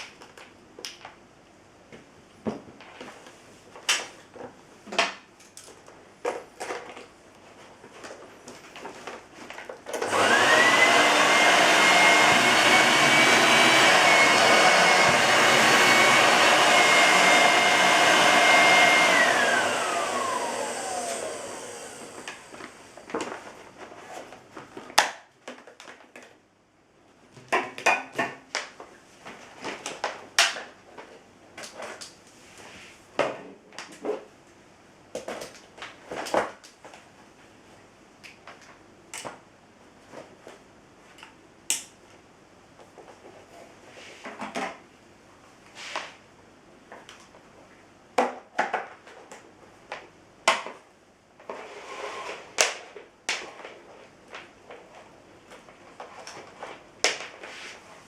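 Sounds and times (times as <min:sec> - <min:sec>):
vacuum cleaner motor whine: 0:10.0 - 0:23.0.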